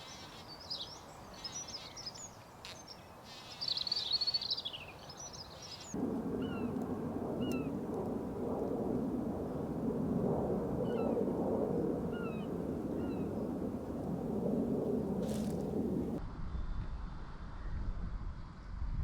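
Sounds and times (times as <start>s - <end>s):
songbirds chirping and trilling: 0.0s - 6.8s
steady low rumble: 5.8s - 19.0s.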